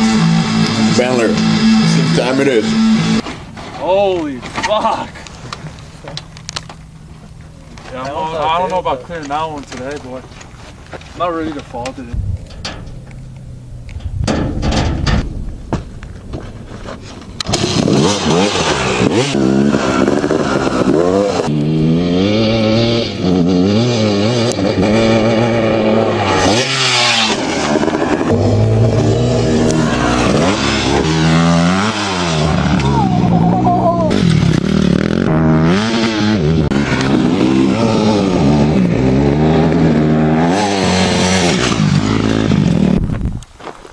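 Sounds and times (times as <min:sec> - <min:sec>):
dirt bike engine revving: 0:00.0 - 0:03.2, 0:17.4 - 0:43.1.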